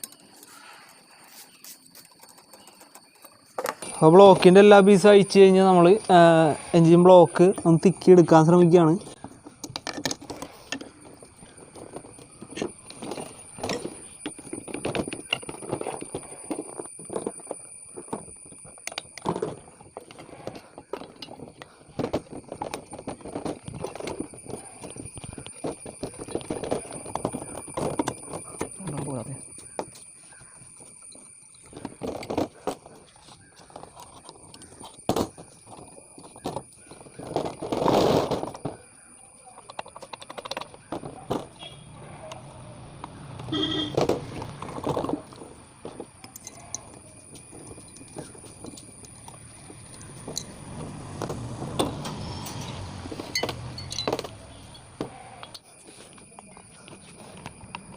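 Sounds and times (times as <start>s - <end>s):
clicks and knocks on metal parts: 9.2s - 30.0s, 38.2s - 41.7s
metallic clatter of tools: 51.8s - 55.7s.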